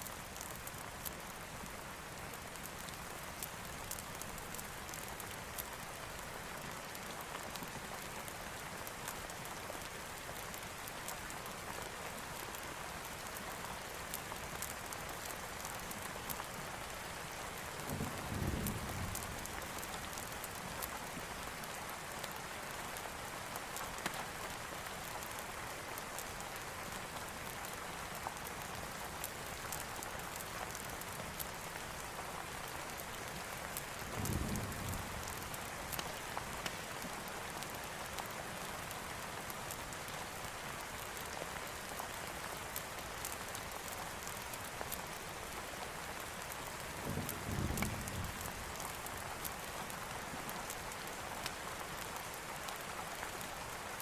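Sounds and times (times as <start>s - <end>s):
steady rainfall: 0.0s - 54.0s
distant thunder rumble: 47.1s - 48.5s.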